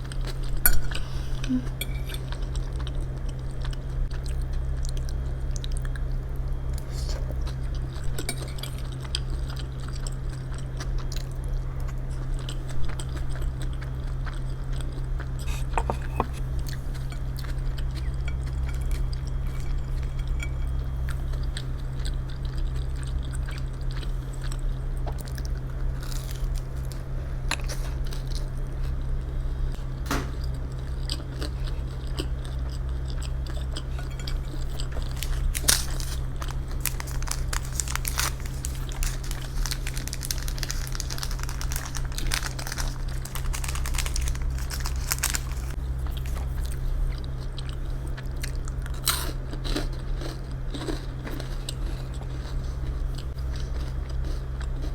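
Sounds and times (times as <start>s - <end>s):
steady low hum: 0.0s - 54.9s
chewing and biting: 30.4s - 54.9s
sharp clicks and crunches: 34.9s - 46.4s.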